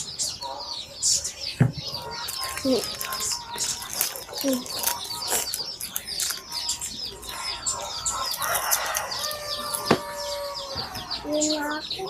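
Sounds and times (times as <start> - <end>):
chickens calling: 0.0 - 12.0
small birds chirping: 0.0 - 12.0
rooster crowing: 7.6 - 11.3.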